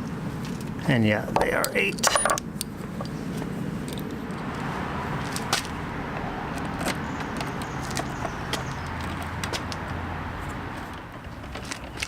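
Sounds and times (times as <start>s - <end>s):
metal bolts and tools clicking: 1.4s - 3.2s.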